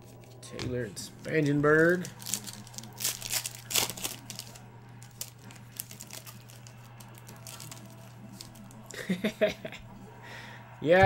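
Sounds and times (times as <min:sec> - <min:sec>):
low electrical hum: 0:00.0 - 0:11.0
cards being shuffled: 0:01.1 - 0:09.1
wrappers crinkling: 0:01.2 - 0:09.4.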